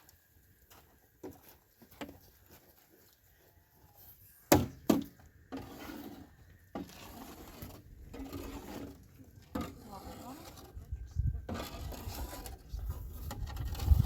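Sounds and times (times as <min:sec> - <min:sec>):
scraping and rustling: 0:05.4 - 0:14.0.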